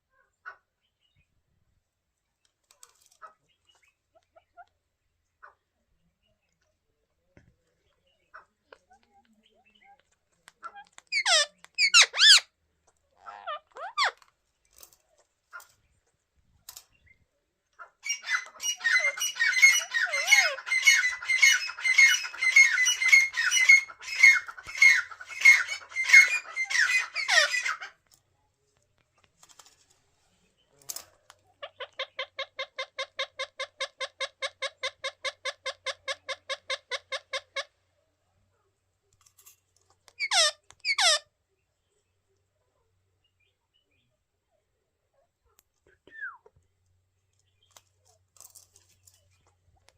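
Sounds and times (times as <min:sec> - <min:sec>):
parakeets squawking: 0:10.7 - 0:12.4, 0:13.2 - 0:14.2, 0:18.0 - 0:27.9, 0:40.2 - 0:41.2
parakeets screeching: 0:11.1 - 0:12.4, 0:13.2 - 0:14.2, 0:18.0 - 0:27.9, 0:40.2 - 0:41.2.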